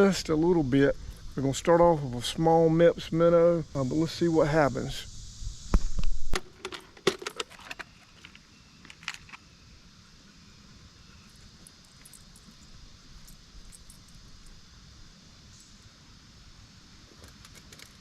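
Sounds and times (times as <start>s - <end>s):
faint background hiss: 0.0s - 18.0s
metallic clinks of small gear: 11.2s - 14.6s.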